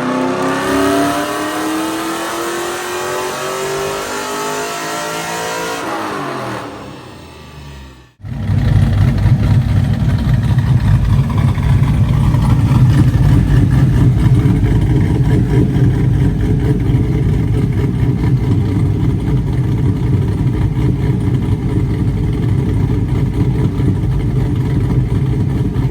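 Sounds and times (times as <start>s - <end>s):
lumpy car engine idling: 8.4s - 25.9s.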